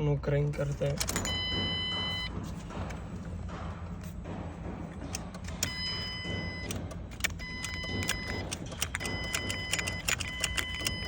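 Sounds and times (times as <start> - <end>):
car warning chime: 1.2 - 2.3, 7.4 - 11.0
ignition key clicks: 5.5 - 11.0.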